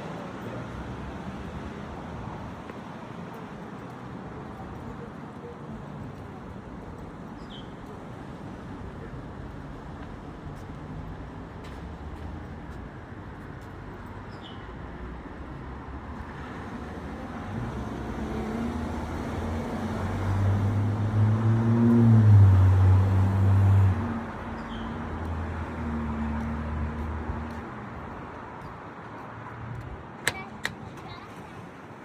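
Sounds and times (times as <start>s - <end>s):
traffic noise: 0.0s - 32.0s.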